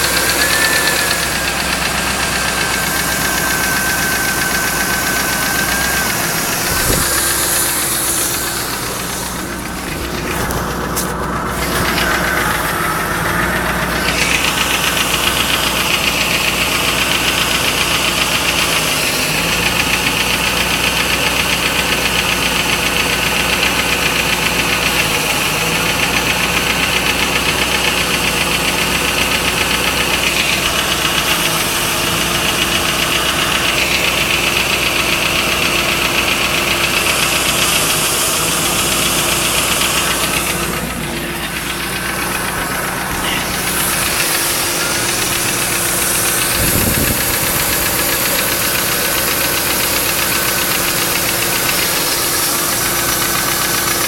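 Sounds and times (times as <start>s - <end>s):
car engine running: 0.0s - 54.0s
engine tapping: 0.0s - 54.0s.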